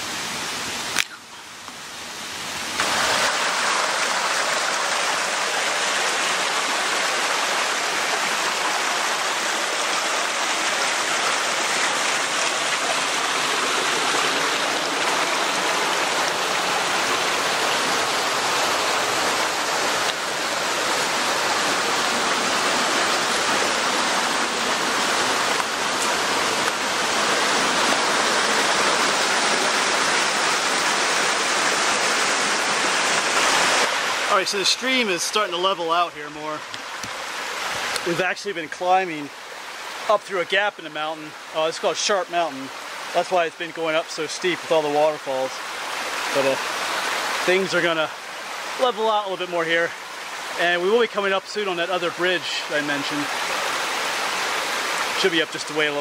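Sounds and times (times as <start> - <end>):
stream rushing over waterfalls: 0.0 - 56.0.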